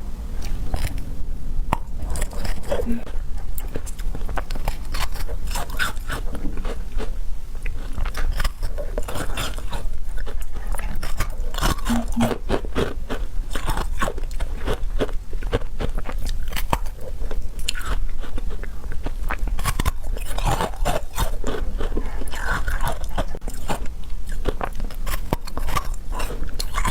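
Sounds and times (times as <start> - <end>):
crunchy bites and chewing: 1.7 - 26.9.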